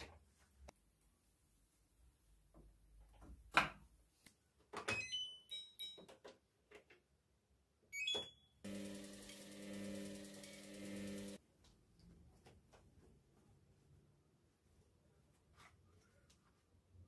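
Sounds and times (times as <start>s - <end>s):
appliance running hum: 8.7s - 11.4s.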